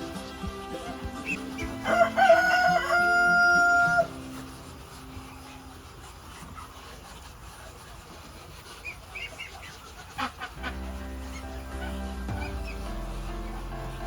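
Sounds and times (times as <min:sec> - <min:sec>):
background music: 0:00.0 - 0:05.8, 0:10.2 - 0:14.0
poultry calling: 0:00.0 - 0:14.0.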